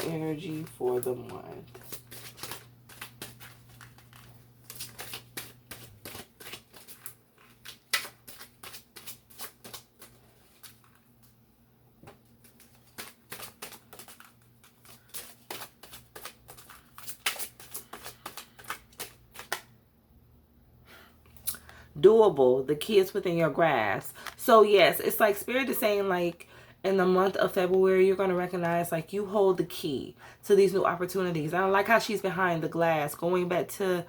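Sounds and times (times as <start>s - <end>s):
cards riffling: 0.4s - 11.4s, 12.0s - 19.7s.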